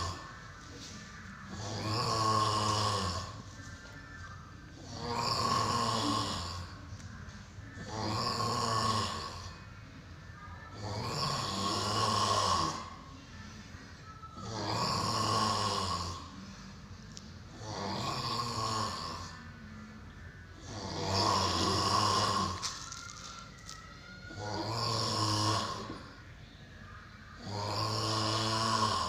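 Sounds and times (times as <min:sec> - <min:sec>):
person snoring: 0:00.0 - 0:03.7, 0:04.7 - 0:07.1, 0:07.8 - 0:09.7, 0:10.7 - 0:13.2, 0:14.4 - 0:19.7, 0:20.5 - 0:26.2, 0:27.4 - 0:29.0.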